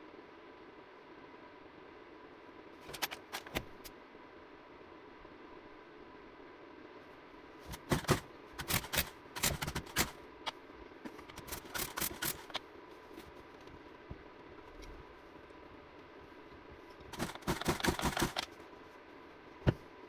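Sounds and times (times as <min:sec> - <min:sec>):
faint steady hum: 0:00.0 - 0:20.0
small hard parts clicking and rattling: 0:11.1 - 0:12.6, 0:17.0 - 0:18.6.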